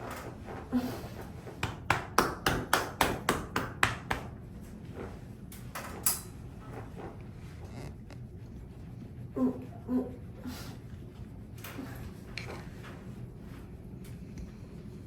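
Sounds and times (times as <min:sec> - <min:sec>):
hands tapping on body: 0:01.5 - 0:04.4.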